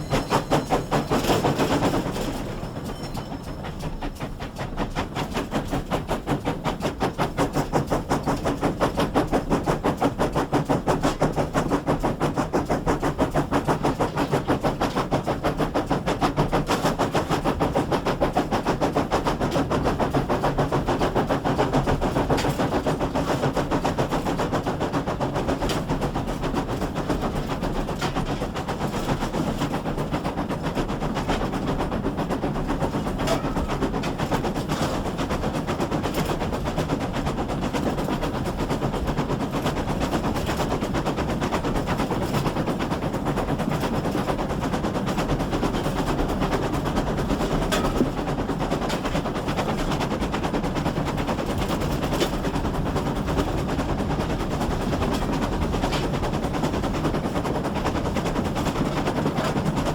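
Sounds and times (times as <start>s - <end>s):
steam locomotive chuffing: 0.0s - 59.9s.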